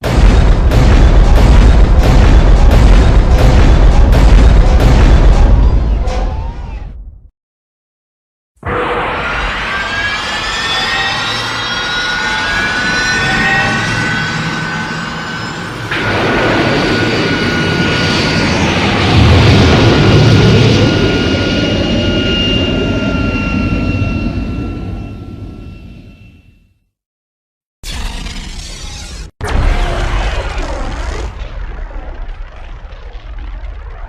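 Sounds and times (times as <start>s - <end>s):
high whining tones: 8.7s - 26.4s
mechanical monster roar: 27.8s - 32.3s.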